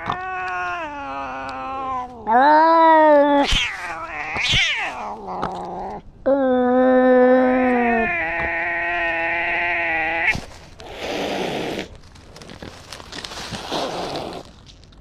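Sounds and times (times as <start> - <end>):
cat yowling: 0.0 - 10.4
cat hissing: 3.3 - 5.8, 7.5 - 12.0, 13.5 - 14.5.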